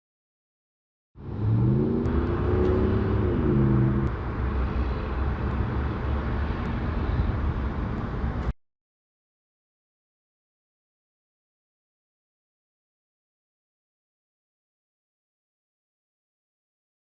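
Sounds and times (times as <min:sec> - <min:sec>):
vehicle engine pulling away: 0:01.2 - 0:06.4
low driving rumble: 0:01.2 - 0:08.5.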